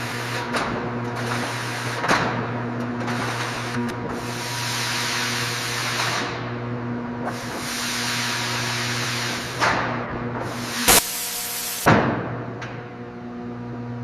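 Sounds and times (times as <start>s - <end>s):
hiss: 4.2s - 6.4s, 7.2s - 9.6s, 10.5s - 11.9s
loud sharp burst: 10.8s - 11.9s.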